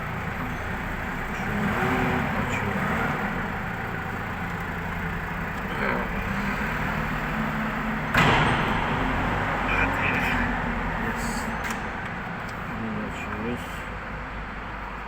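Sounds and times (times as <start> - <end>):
truck diesel engine idling: 0.0 - 15.0
sudden loud burst of noise: 8.1 - 11.1.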